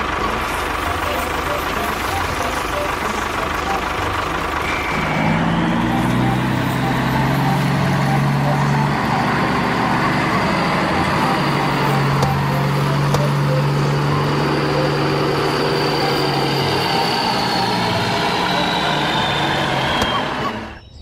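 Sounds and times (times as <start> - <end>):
vehicle engine running: 0.0 - 20.8
faint high whine: 0.0 - 21.0.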